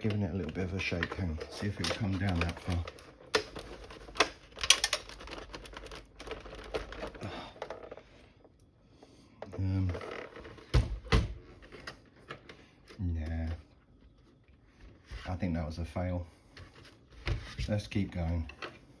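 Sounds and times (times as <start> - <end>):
loose connector rattling in casing: 0.0 - 7.9.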